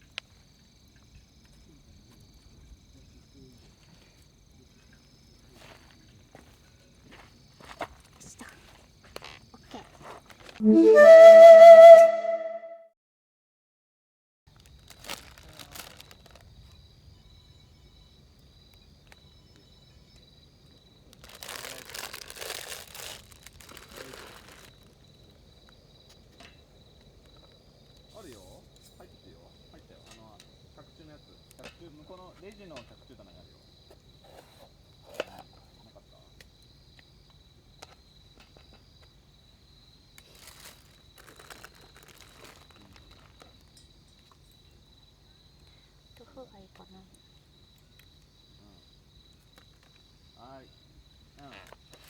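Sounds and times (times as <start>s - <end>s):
crickets trilling: 0.0s - 12.4s, 14.5s - 52.0s
insects chirping: 0.0s - 12.6s, 14.5s - 52.0s
crinkling rustling handling noise: 5.6s - 10.6s, 14.5s - 16.7s, 21.1s - 25.0s, 40.2s - 43.8s.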